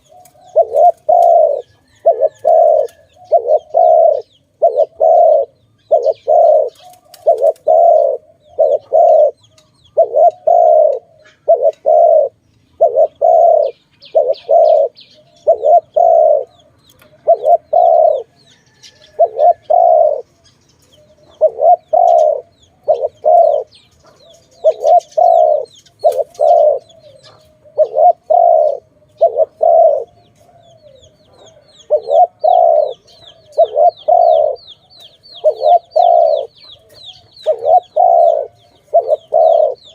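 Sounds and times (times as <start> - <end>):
dove cooing: 0.0 - 39.9
small birds twittering: 0.0 - 39.9.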